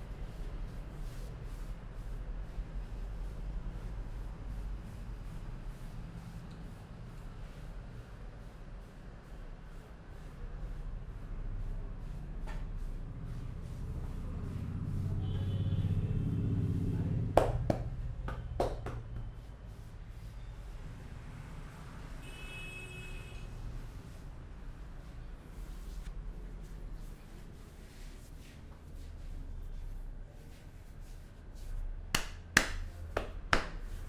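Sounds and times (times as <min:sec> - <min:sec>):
short sharp knocks: 0:17.4 - 0:19.3, 0:32.2 - 0:34.0
hands rubbing scalp and hair: 0:17.4 - 0:19.6, 0:30.5 - 0:34.0.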